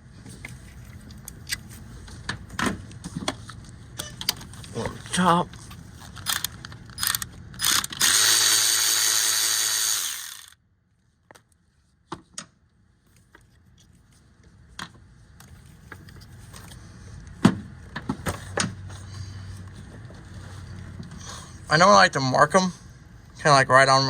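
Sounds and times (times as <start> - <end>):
clicks and knocks of parts: 5.5 - 8.2
power tool motor running: 7.0 - 10.6.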